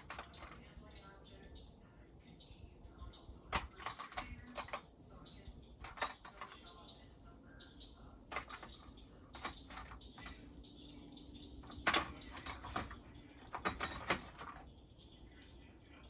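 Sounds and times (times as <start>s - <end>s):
metal hand tools clinking: 3.5s - 4.8s, 5.8s - 6.6s, 8.3s - 10.4s, 11.7s - 14.6s.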